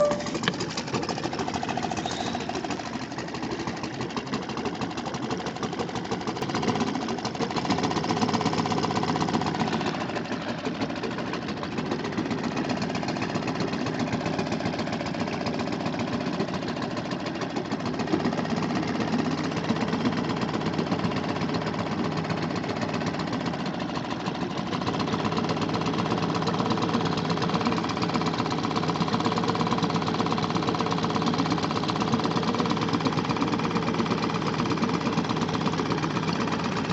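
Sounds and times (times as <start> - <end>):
outboard motor chugging: 0.0 - 36.9.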